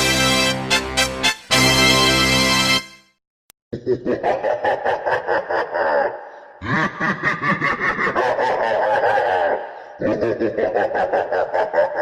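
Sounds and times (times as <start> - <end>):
person laughing: 3.8 - 12.0.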